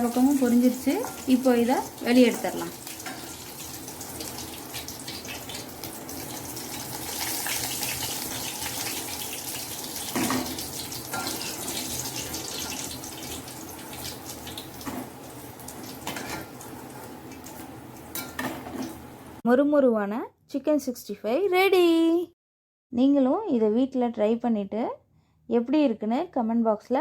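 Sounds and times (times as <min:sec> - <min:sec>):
chicken deep-frying in oil: 0:00.0 - 0:19.4.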